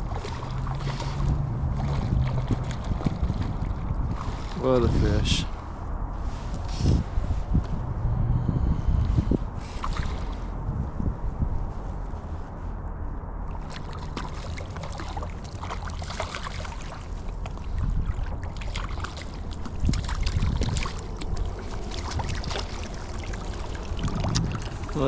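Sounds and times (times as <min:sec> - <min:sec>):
river water splashing: 0:00.0 - 0:05.2, 0:09.6 - 0:10.5, 0:13.5 - 0:25.0
wind rumble on microphone: 0:00.0 - 0:25.0.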